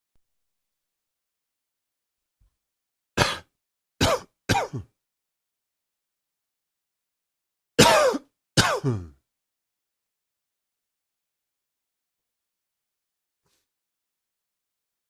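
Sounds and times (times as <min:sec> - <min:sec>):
person coughing: 0:03.2 - 0:05.0, 0:07.8 - 0:09.2.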